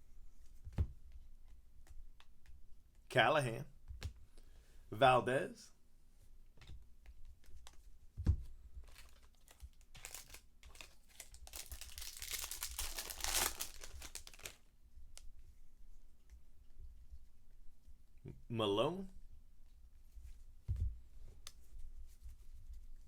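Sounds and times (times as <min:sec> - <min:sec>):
card pack wrapper crinkling: 0:08.8 - 0:14.7.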